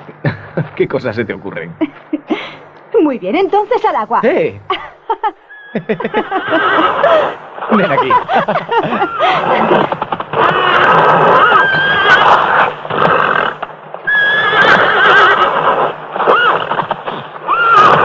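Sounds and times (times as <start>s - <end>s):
horse whinnying and neighing: 5.5s - 7.7s, 9.0s - 18.0s.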